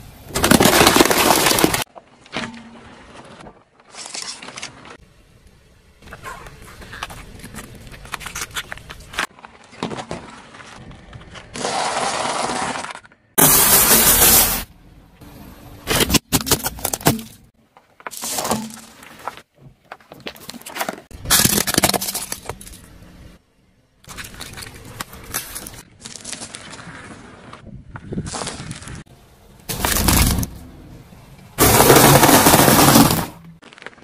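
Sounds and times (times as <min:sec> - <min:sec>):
objects cracking under car tyres: 0:00.3 - 0:05.0, 0:15.8 - 0:23.4, 0:24.0 - 0:30.8, 0:31.6 - 0:34.0.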